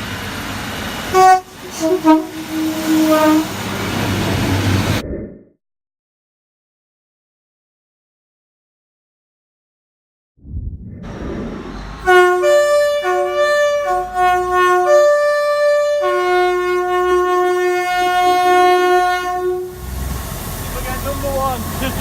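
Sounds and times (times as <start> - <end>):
rumble of passing train: 0.0 - 5.0, 10.8 - 22.0
train horn blasts: 1.1 - 3.7, 12.0 - 19.8.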